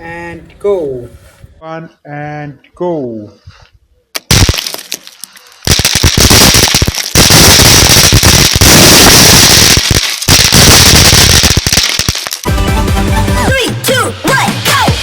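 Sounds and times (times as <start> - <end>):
snapper firecrackers popping: 4.1 - 12.5.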